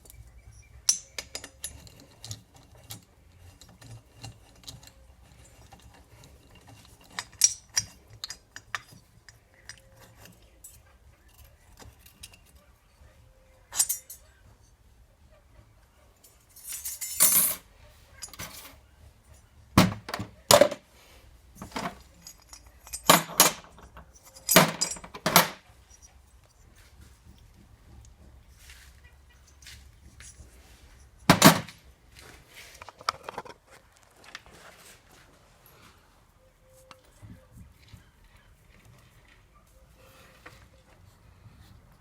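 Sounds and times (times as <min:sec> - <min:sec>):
metal tools clinking: 0:00.0 - 0:14.8, 0:16.2 - 0:20.9, 0:21.5 - 0:35.0.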